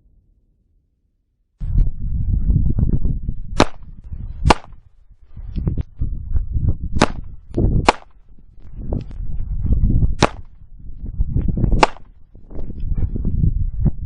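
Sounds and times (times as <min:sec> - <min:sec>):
low rumbling noise: 0:01.6 - 0:14.0
sharp loud cracks: 0:03.6 - 0:03.8, 0:04.5 - 0:04.8, 0:07.0 - 0:08.2, 0:10.2 - 0:10.5, 0:11.8 - 0:12.2.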